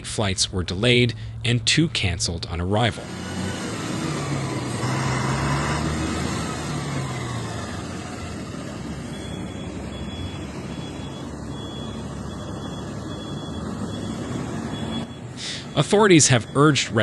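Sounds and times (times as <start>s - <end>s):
traffic and road noise: 0.0s - 17.0s
vehicle engine running: 0.0s - 17.0s
high beeps: 9.0s - 17.0s.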